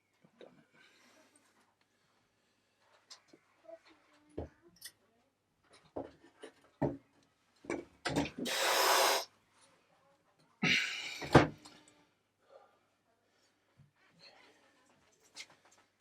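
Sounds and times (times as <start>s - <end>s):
breathy huffs of effort: 10.6s - 11.5s.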